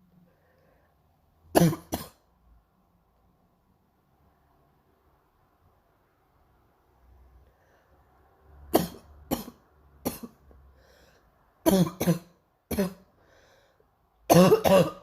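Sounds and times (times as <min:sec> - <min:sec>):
girl coughing: 0:01.6 - 0:02.2, 0:08.8 - 0:10.4, 0:11.7 - 0:13.1, 0:14.3 - 0:15.0
girl breathing in: 0:13.2 - 0:13.9.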